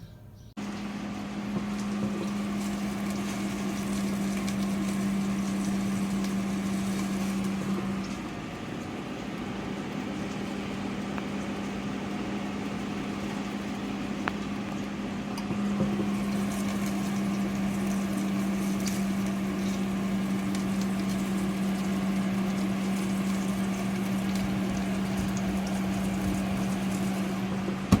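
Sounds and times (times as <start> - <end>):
convection fan motor hum: 0.0 - 28.0.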